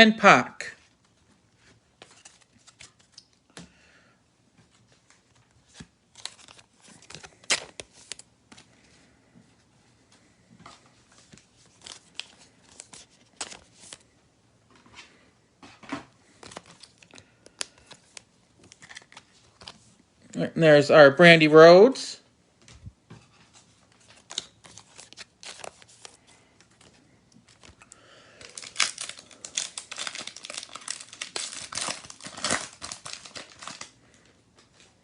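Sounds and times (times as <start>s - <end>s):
wrapper tearing and crinkling: 5.7s - 8.3s, 16.4s - 19.8s, 24.0s - 26.2s, 27.5s - 34.0s.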